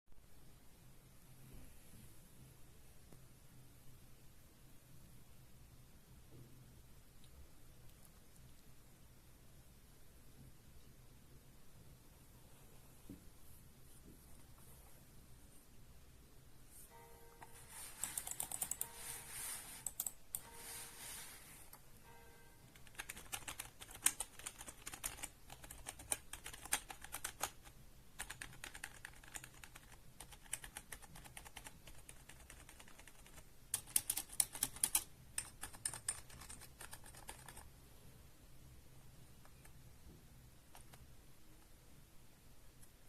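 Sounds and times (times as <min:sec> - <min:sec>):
keyboard typing: 0:17.4 - 0:20.8, 0:22.7 - 0:37.7, 0:40.7 - 0:41.1.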